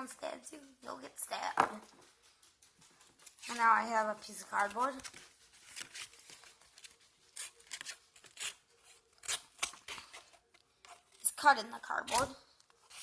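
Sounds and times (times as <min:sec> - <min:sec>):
blade scraping cardboard: 0:07.4 - 0:10.2.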